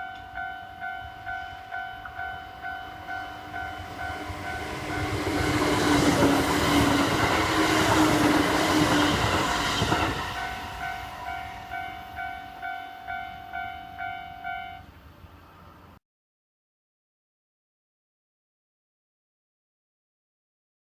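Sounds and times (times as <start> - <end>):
crossing warning bell ringing: 0.0 - 15.1
train wheels on track: 0.0 - 16.0.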